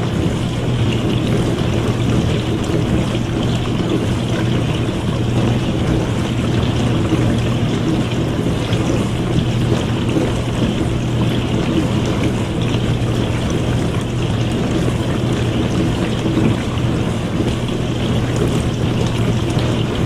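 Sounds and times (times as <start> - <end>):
dishwasher motor hum: 0.0 - 20.0
water spraying inside tub: 0.0 - 20.0.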